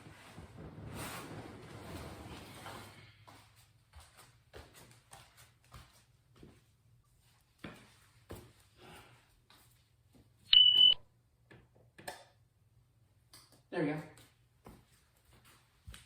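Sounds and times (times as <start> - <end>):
short loud electronic beep: 10.5 - 11.0.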